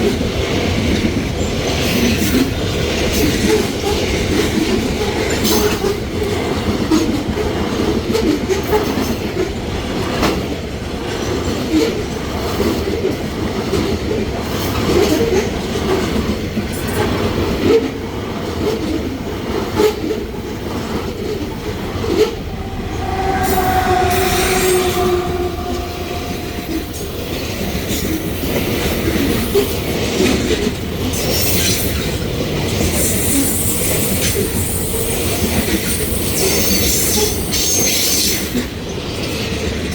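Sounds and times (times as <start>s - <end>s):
freight train wagons rumbling: 11.1s - 37.6s
two-note squeal: 21.4s - 28.4s.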